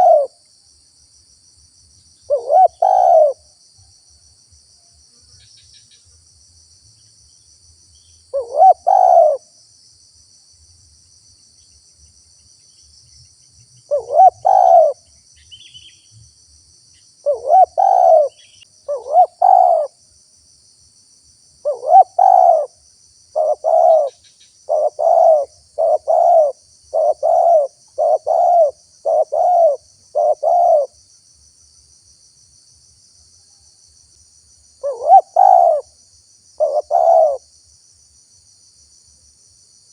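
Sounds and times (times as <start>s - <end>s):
dove cooing: 0.0s - 0.4s, 2.3s - 3.5s, 8.3s - 9.5s, 13.9s - 15.0s, 17.2s - 20.0s, 21.6s - 31.0s, 34.8s - 35.9s, 36.6s - 37.4s
faint high insect hum: 0.0s - 39.9s.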